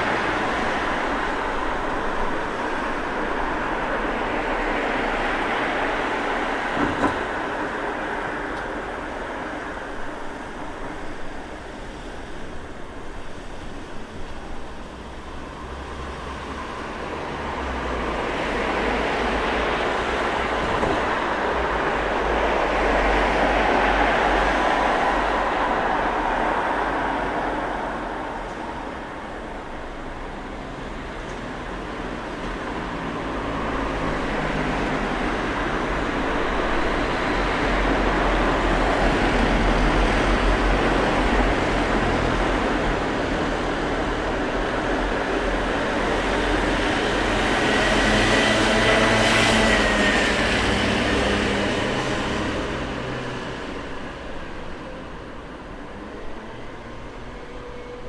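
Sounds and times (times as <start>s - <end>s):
traffic noise: 0.0s - 58.0s
loud vehicle passing: 32.9s - 54.6s.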